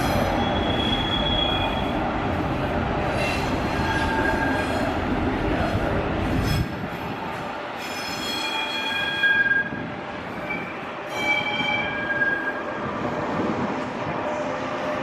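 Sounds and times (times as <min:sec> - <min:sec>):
train wheels squealing: 0:00.0 - 0:02.0, 0:03.2 - 0:05.0, 0:07.8 - 0:12.8
train rumble: 0:00.0 - 0:15.0.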